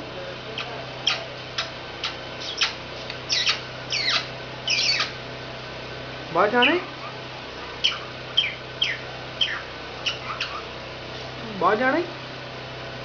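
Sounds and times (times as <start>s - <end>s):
parrot squeaking and chirping: 0.6s - 5.2s, 6.5s - 10.7s.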